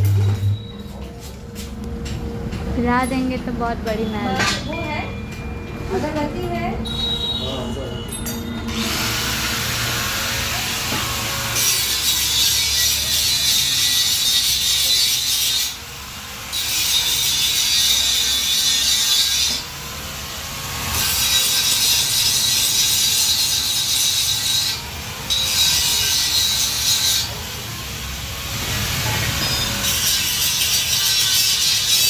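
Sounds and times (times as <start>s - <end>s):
power tool grinding steel: 8.7s - 32.0s.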